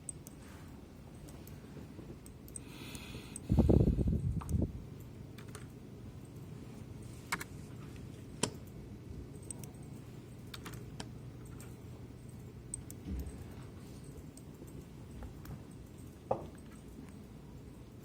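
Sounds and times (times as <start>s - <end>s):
keyboard keys clicking: 4.3s - 6.4s, 9.4s - 17.3s.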